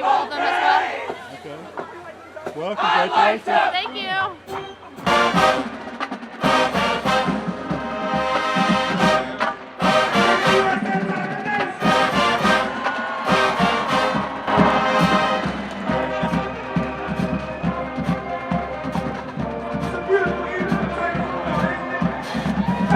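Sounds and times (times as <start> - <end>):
drum strokes: 4.4 - 22.9
brass chords: 4.5 - 22.8.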